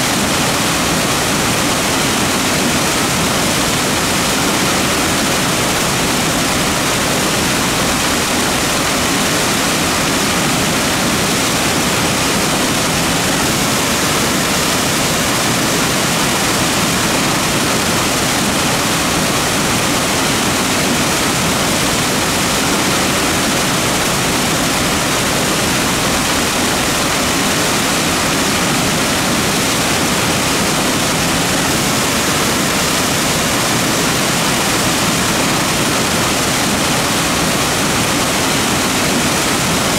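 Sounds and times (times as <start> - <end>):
creek rushing over rocks: 0.0 - 39.9.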